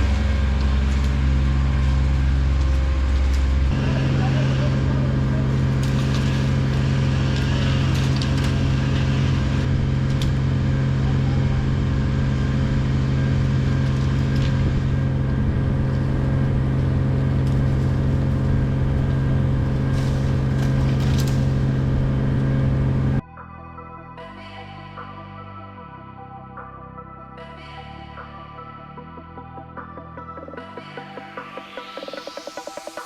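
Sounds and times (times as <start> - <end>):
engine running steadily: 0.0 - 23.2.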